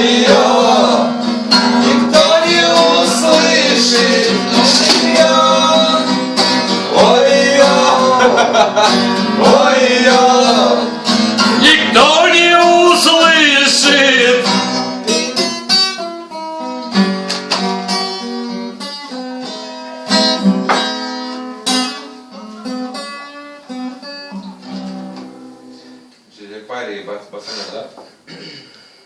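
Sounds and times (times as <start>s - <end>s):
acoustic guitar chords: 0.0s - 26.2s.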